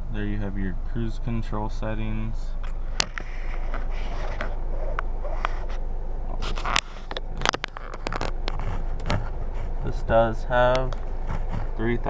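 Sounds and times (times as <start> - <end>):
steady low hum: 0.0 - 12.0
light scrapes: 3.1 - 10.1.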